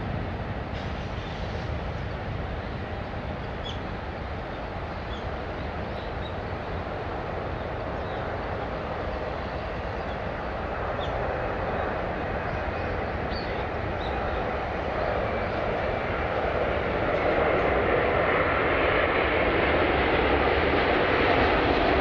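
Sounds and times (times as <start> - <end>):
jet airliner engines rumbling: 0.0 - 22.0.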